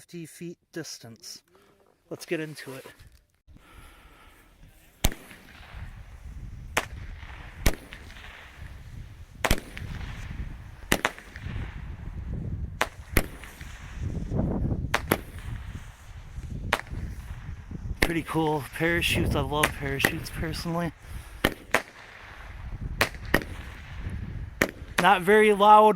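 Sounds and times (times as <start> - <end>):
firework launch pops: 5.0 - 18.3, 21.0 - 25.1.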